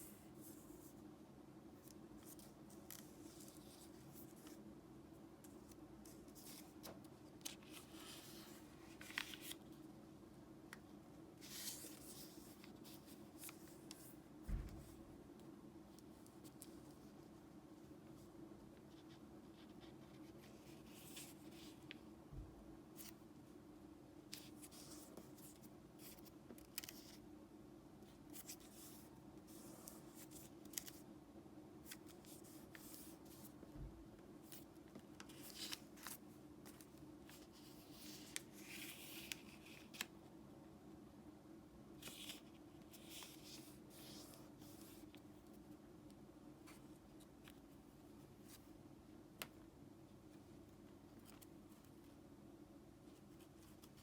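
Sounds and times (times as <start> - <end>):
paper rustling and crackling: 5.5 - 9.8, 28.3 - 31.0, 34.4 - 40.1.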